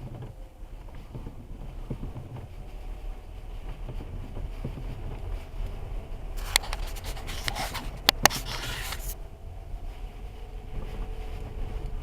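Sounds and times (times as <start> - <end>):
scraping rubbing noise: 6.4 - 9.2.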